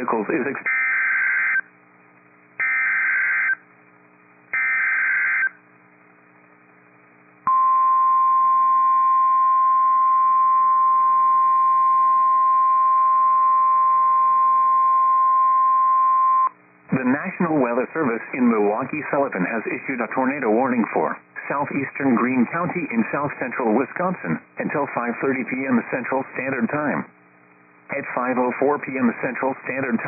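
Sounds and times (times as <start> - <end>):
steady warning alarm tone: 2.6 - 3.6, 4.6 - 5.6
screechy digital data bursts: 4.6 - 5.6.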